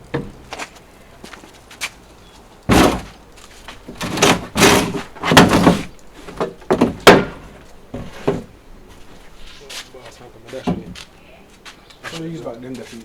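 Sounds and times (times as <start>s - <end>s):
wooden boards knocking and scraping: 0.0s - 0.8s, 2.6s - 11.2s.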